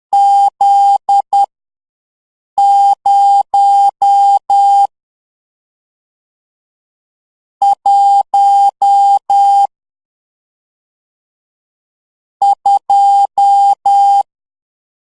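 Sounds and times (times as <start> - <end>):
morse code beeps: 2.6 - 4.9, 7.6 - 9.7, 12.4 - 14.3.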